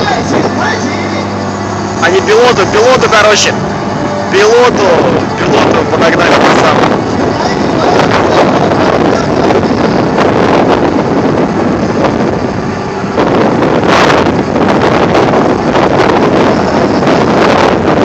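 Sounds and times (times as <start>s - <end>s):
helicopter running: 0.0s - 18.0s
wind buffeting microphone: 0.0s - 18.0s.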